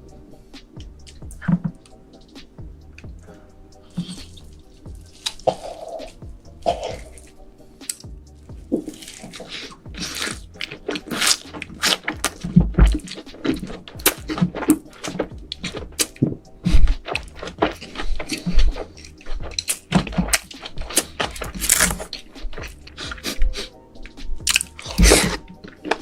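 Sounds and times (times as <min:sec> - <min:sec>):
person chewing and crunching food: 0:00.8 - 0:01.8, 0:03.0 - 0:26.0
wet mouth clicks: 0:24.4 - 0:26.0.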